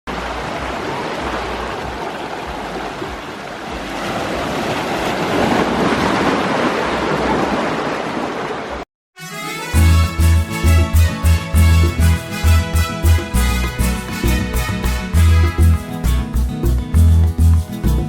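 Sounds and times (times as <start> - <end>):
rushing water: 0.1 - 8.8.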